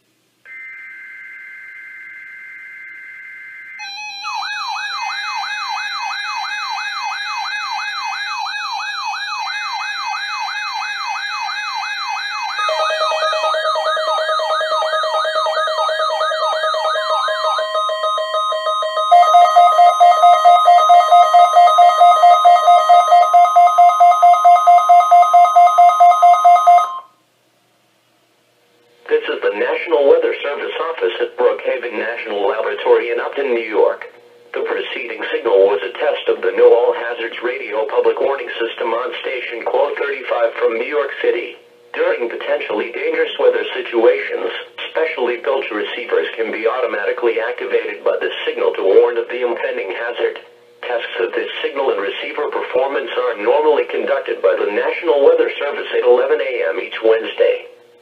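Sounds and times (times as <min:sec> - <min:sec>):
rapid pulsing beep: 0:00.5 - 0:27.1
steady alarm tone: 0:00.5 - 0:27.2
warbling siren alarm: 0:00.5 - 0:27.2.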